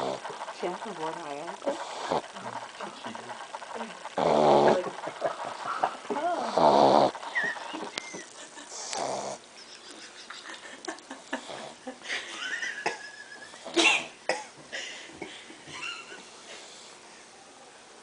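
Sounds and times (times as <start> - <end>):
dog snorting and snuffling: 0.0 - 9.4
dog whining: 5.7 - 9.6.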